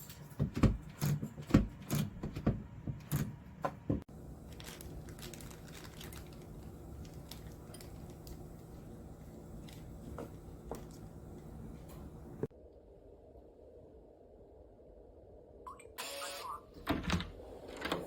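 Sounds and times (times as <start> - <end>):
steady low hum: 2.8 - 15.7.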